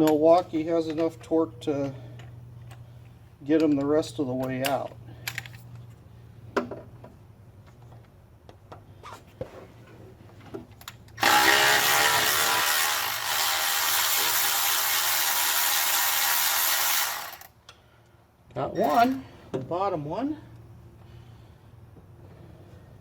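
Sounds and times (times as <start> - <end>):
cordless ratchet whirring: 11.2 - 17.5.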